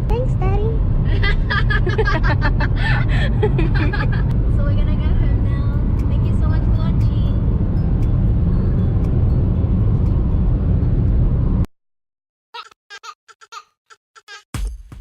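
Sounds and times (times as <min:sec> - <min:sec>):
voice: 0:00.0 - 0:00.8, 0:04.6 - 0:07.3
low rumbling noise: 0:00.0 - 0:11.7.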